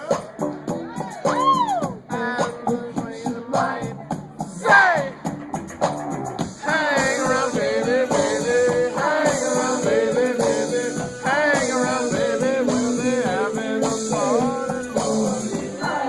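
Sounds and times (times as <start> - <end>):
live band playing: 0.0 - 2.9, 4.2 - 16.0
person singing: 6.6 - 16.0.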